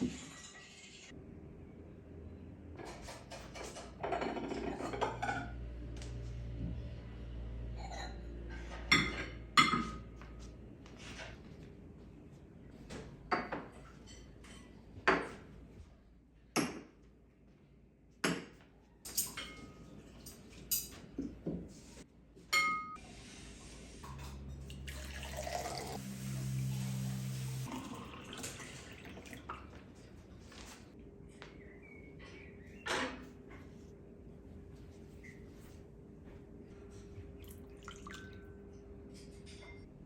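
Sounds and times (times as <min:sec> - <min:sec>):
cutlery and dishes clinking: 0:19.1 - 0:21.1
steady hum with hiss: 0:23.0 - 0:28.0.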